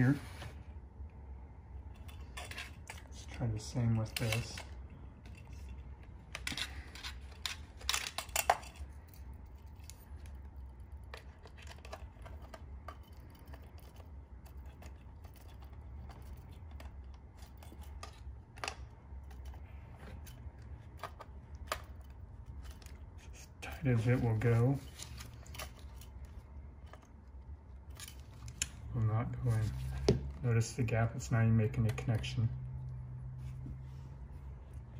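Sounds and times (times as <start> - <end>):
low steady hum: 0.0 - 34.9
connector clicks and scrapes: 4.1 - 28.8.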